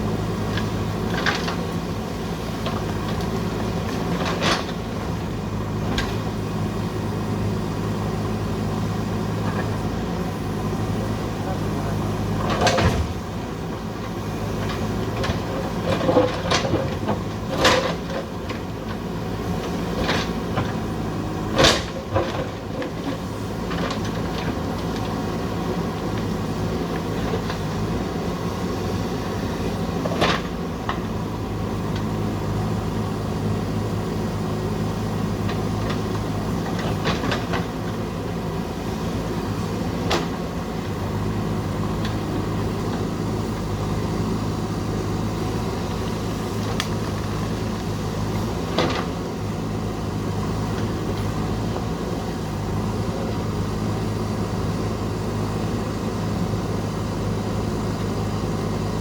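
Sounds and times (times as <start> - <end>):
diesel engine running: 0.0 - 59.0
digger bucket clanks: 11.4 - 13.5, 14.4 - 19.1, 19.7 - 25.2, 39.6 - 43.3.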